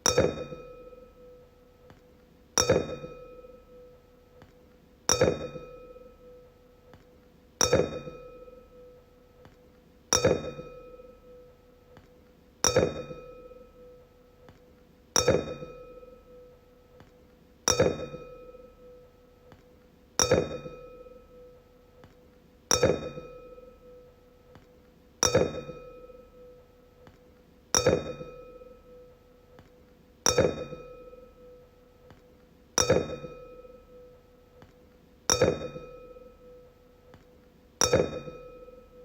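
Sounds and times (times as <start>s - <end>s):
wine glass ringing when struck: 0.1s - 1.3s, 2.6s - 3.8s, 7.6s - 8.9s, 10.1s - 11.4s, 12.6s - 14.0s, 15.2s - 16.4s, 17.7s - 19.0s, 20.2s - 21.5s, 22.7s - 24.0s, 27.8s - 29.1s, 30.3s - 31.6s, 32.8s - 34.1s, 35.3s - 36.6s, 37.8s - 39.0s.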